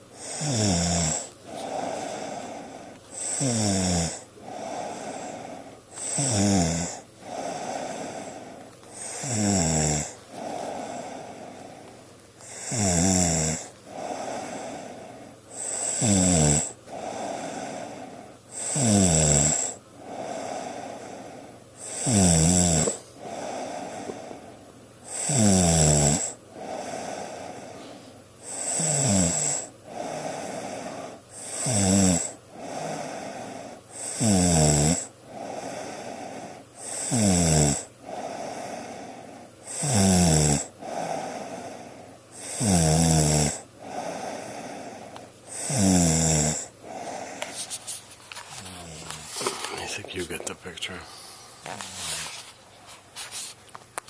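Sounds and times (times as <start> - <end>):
person snoring: 0.0 - 11.7, 12.4 - 47.6, 48.4 - 52.5
quiet breath: 1.2 - 3.2, 4.4 - 6.3, 10.1 - 12.6, 13.7 - 15.8, 16.9 - 18.4, 20.0 - 21.6, 22.8 - 24.7, 26.5 - 28.2, 35.2 - 36.8, 38.0 - 39.6, 40.8 - 42.4, 43.8 - 45.4.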